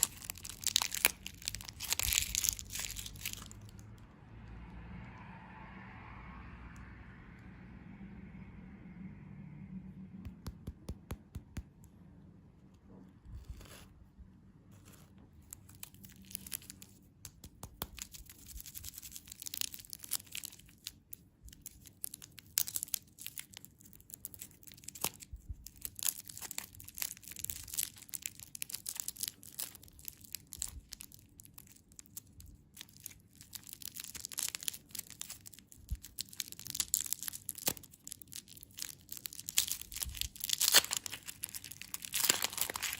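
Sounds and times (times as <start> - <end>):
candy wrappers crinkling and tearing: 0.0 - 4.1, 15.4 - 42.9.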